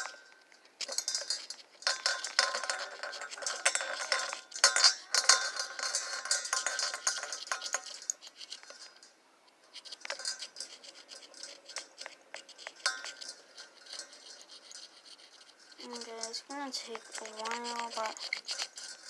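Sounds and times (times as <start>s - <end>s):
key scraping chalk: 9.7s - 19.0s.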